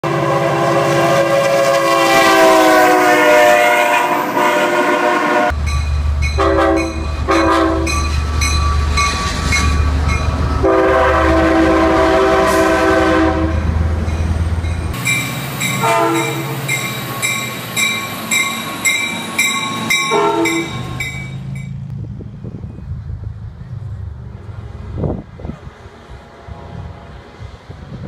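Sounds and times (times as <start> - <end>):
locomotive air horn: 0.0 - 5.6, 6.4 - 8.2, 10.6 - 13.7, 15.8 - 16.7, 20.1 - 21.1
locomotive rumble: 0.0 - 28.0.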